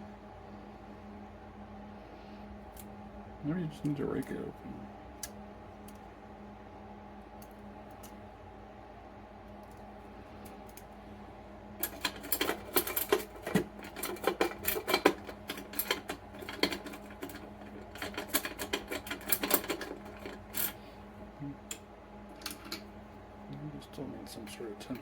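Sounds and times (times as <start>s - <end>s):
lock pick scraping in lock: 11.8s - 20.8s.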